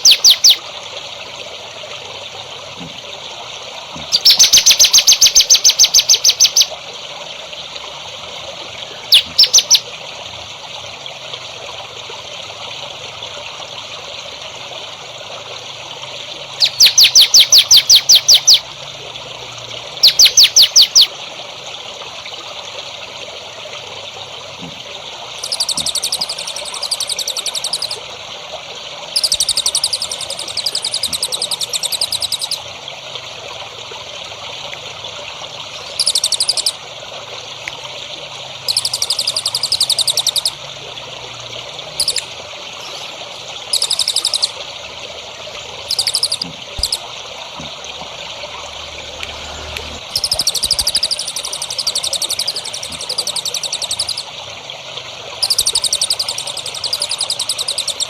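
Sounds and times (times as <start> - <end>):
songbird trilling: 0.0 - 0.6, 4.1 - 6.7, 9.1 - 9.8, 16.6 - 18.7, 20.0 - 21.1, 25.4 - 28.0, 29.2 - 32.6, 35.9 - 36.7, 38.7 - 40.6, 42.0 - 44.6, 45.9 - 47.0, 50.1 - 54.3, 55.4 - 58.0
trickle of running water: 0.0 - 58.0.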